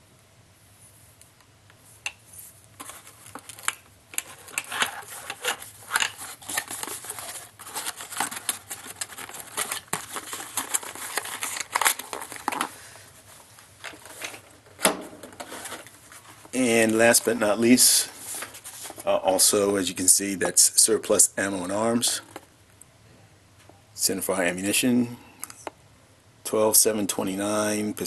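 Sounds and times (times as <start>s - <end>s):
packaging crinkling and rustling: 2.7s - 20.5s.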